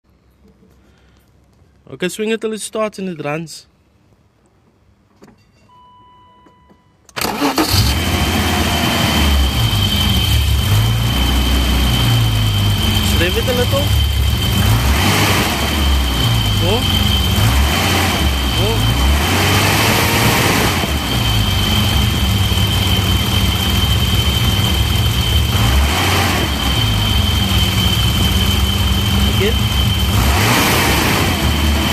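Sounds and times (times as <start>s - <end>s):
car engine starting and idling: 7.1s - 31.9s
high steady whine: 8.5s - 31.9s.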